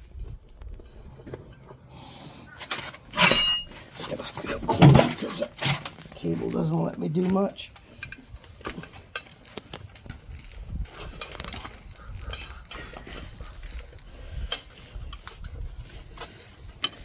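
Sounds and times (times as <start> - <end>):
metallic clinks and knocks: 2.7 - 3.8.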